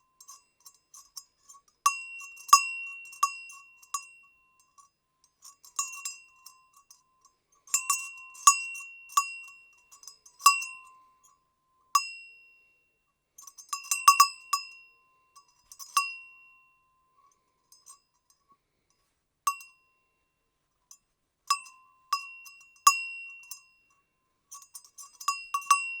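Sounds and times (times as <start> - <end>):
goat bell clanking: 5.4 - 6.7, 7.7 - 10.8, 13.4 - 14.7, 15.5 - 16.2, 24.5 - 26.0.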